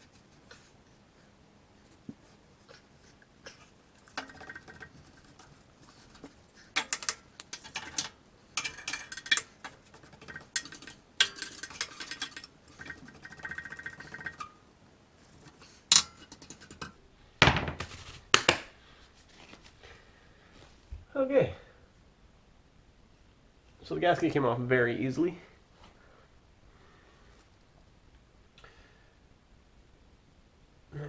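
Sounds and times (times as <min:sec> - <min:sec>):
metal scraping and clinking: 0:00.0 - 0:17.0.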